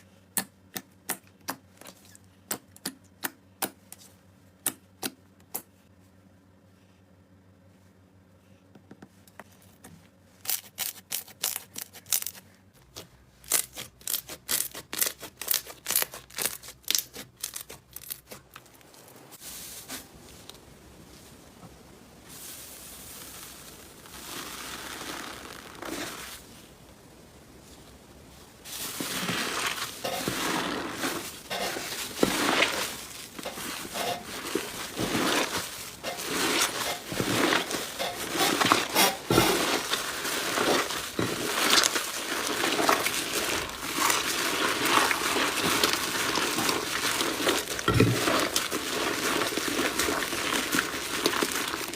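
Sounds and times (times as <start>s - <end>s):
slime crackling and squishing: 10.4s - 18.9s, 22.3s - 26.5s, 28.6s - 51.9s
soft rustling: 18.7s - 26.8s, 27.5s - 51.9s.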